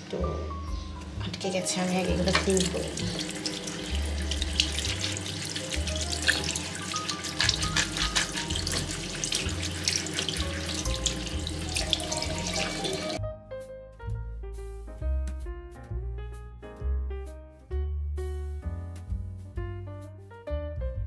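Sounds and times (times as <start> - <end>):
background music: 0.0 - 21.0
tap water splashing into sink: 2.2 - 13.2.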